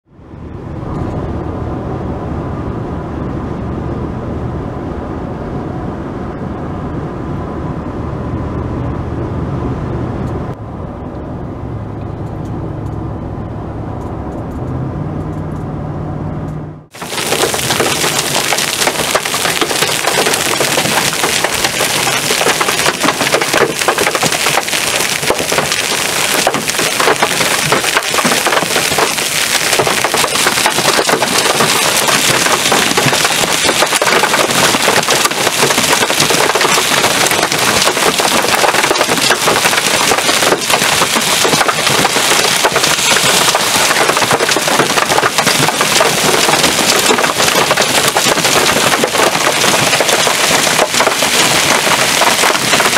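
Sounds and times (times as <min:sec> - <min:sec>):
hail and heavy rain on hard surface: 0:16.9 - 0:52.9.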